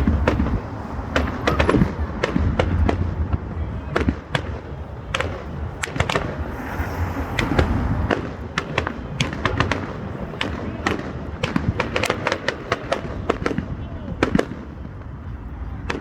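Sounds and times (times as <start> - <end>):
fireworks bangs and crackles: 0.0 - 16.0
firework hissing burst: 5.8 - 8.6.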